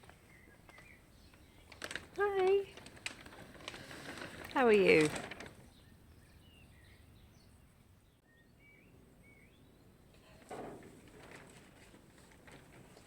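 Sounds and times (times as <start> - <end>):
soft rustle: 0.0 - 5.8, 10.2 - 13.0.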